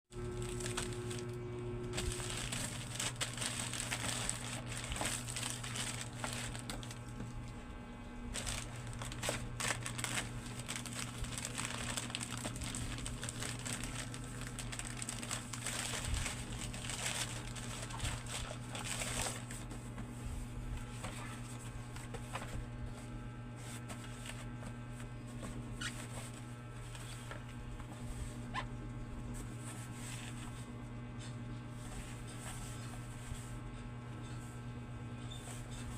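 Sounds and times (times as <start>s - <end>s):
steady low hum: 0.1s - 35.9s
plastic packaging crinkling and tearing: 0.2s - 7.6s, 8.2s - 19.7s.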